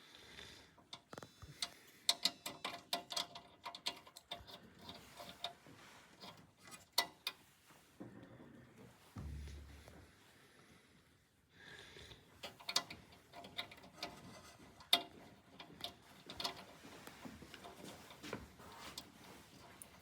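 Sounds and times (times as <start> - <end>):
small clicks and taps: 0.8 - 5.6.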